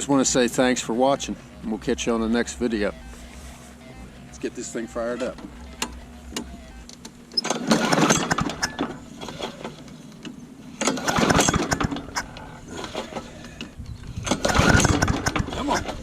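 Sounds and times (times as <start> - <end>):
lawn mower engine cranking: 0.0 - 16.0
recoil starter pull: 5.3 - 9.9, 10.8 - 16.0.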